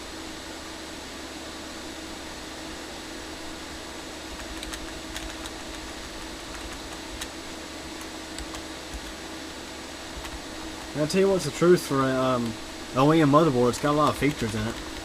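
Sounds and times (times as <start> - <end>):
computer fans whirring: 0.0 - 15.0
keyboard key clicks: 4.4 - 7.3, 8.0 - 9.1.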